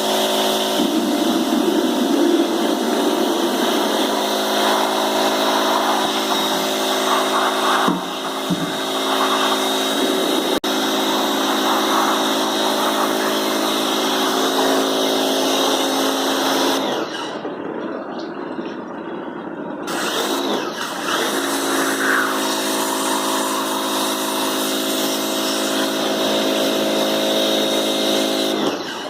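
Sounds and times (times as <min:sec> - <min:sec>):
water spray hissing: 0:00.0 - 0:16.8
pressure washer motor hum: 0:00.0 - 0:29.0.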